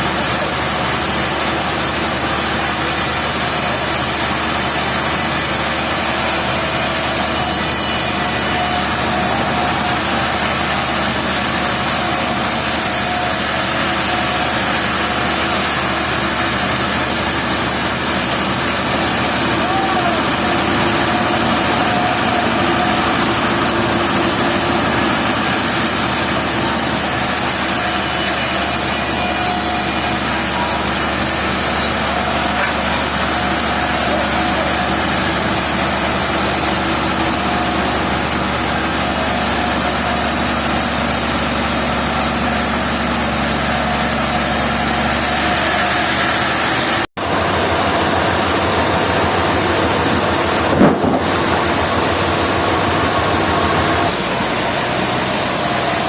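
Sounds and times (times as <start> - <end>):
machinery engine drone: 0.0 - 56.0
hiss of sawing: 54.0 - 56.0.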